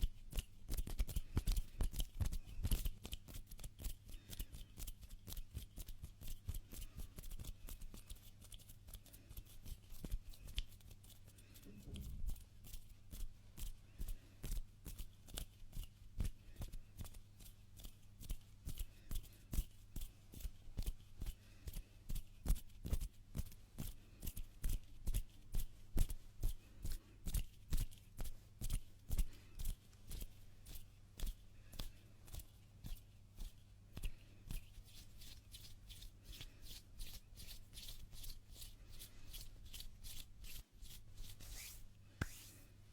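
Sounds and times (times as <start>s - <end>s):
faint low hum: 0.0s - 42.9s
hands rubbing together: 34.0s - 42.8s.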